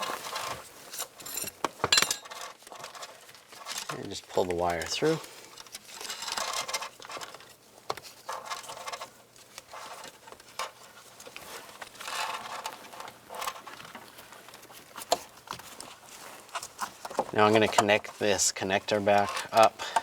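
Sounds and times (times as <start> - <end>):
wire rustling and scraping: 0.0 - 20.0.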